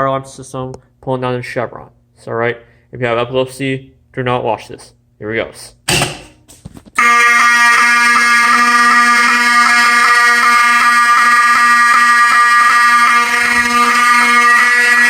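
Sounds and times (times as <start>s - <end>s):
fire alarm horns buzzing: 5.9s - 15.0s.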